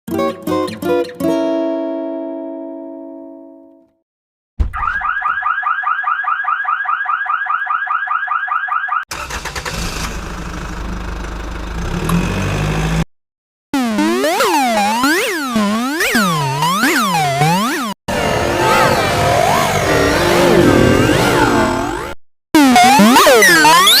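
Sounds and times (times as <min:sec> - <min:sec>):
warbling electronic alarm tone: 0:13.8 - 0:24.0
sustained chord: 0:18.1 - 0:22.1.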